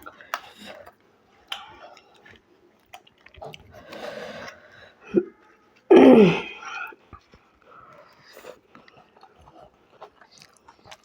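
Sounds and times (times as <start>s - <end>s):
chewing and biting food: 0.0s - 4.6s, 7.0s - 11.0s.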